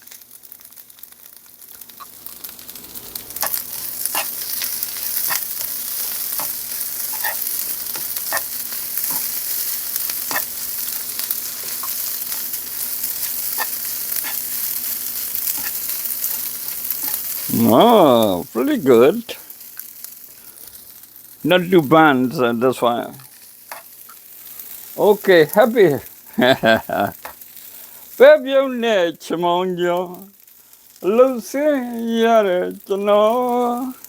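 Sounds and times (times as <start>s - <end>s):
rice sizzling in a hot pan: 0.0s - 34.0s
spatula scraping a pan: 3.3s - 17.5s, 23.2s - 24.8s.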